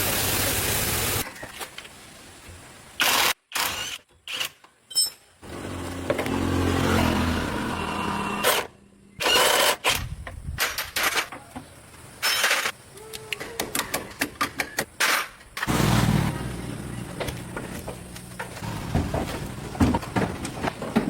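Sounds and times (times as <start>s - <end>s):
loud hissing bursts: 0.0s - 1.2s.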